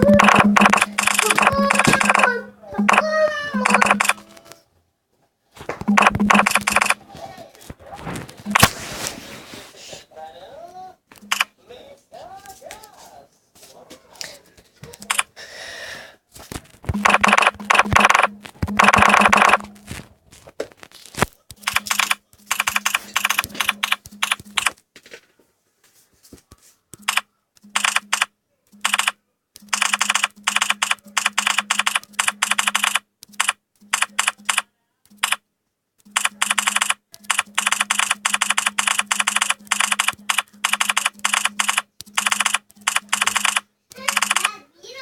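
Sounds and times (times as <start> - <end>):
phone keyboard clicks: 0.0 - 4.5, 5.8 - 7.0, 8.4 - 8.7, 14.9 - 15.3, 16.8 - 19.8, 21.5 - 24.8, 27.0 - 35.4, 36.0 - 44.6.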